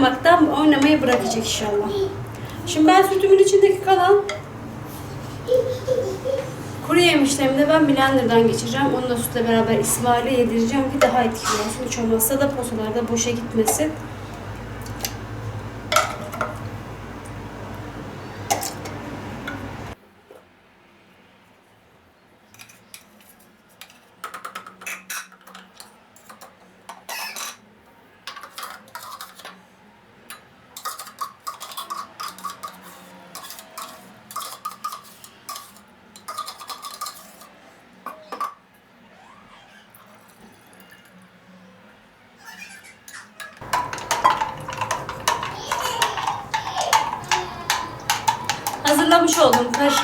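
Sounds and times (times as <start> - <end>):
dishes and utensils clattering: 4.1 - 4.6, 5.4 - 17.4, 18.3 - 19.9, 23.8 - 27.6, 28.3 - 29.6, 30.3 - 38.6, 43.0 - 50.0.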